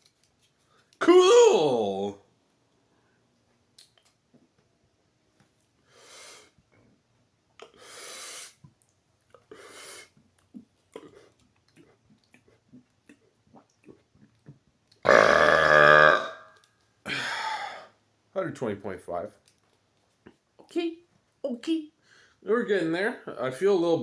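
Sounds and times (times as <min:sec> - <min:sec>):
man breathing quickly: 0:05.8 - 0:06.6, 0:17.1 - 0:18.0
loud deep belch: 0:15.0 - 0:16.5.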